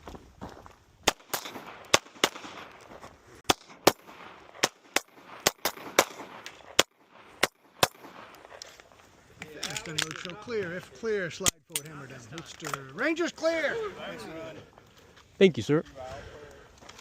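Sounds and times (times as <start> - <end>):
pistol shots: 1.0 - 8.6.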